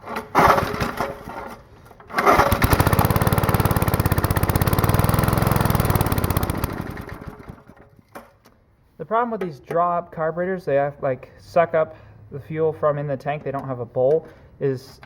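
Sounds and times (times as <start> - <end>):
small engine pull-starting and running: 0.0 - 8.0.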